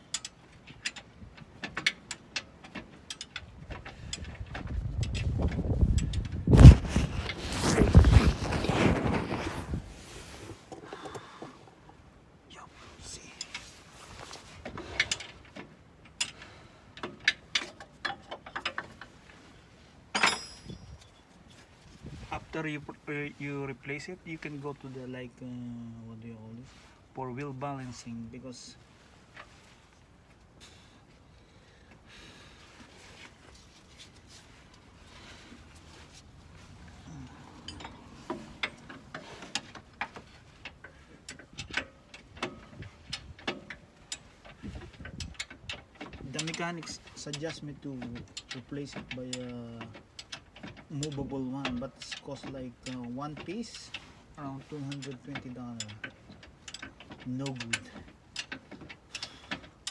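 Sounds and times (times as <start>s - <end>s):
hand tools clinking on metal: 20.1s - 21.2s
hand tools clicking on metal: 37.5s - 59.9s.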